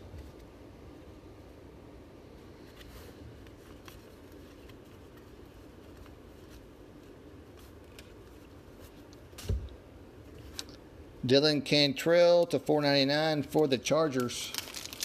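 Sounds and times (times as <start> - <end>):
cards shuffling with clicks: 7.5 - 9.6.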